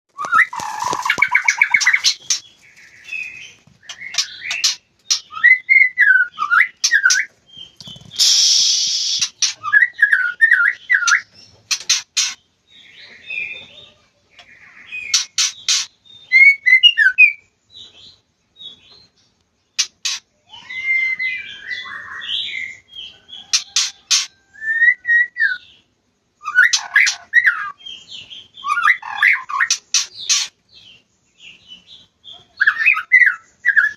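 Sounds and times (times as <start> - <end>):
sharp clicking bird notes: 0.2 - 2.4
songbird whistling: 3.2 - 11.3, 15.0 - 17.5, 20.4 - 25.8, 26.4 - 27.9.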